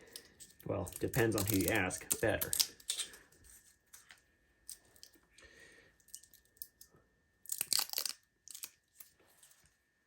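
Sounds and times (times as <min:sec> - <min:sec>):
plastic film crackling: 0:00.6 - 0:02.8.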